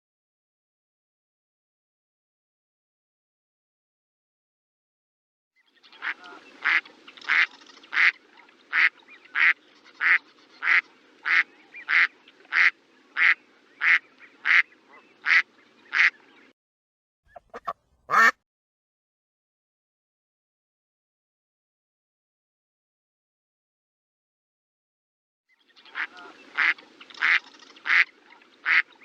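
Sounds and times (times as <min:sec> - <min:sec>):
duck quacking: 0:06.0 - 0:16.2, 0:17.3 - 0:18.4, 0:26.0 - 0:28.9.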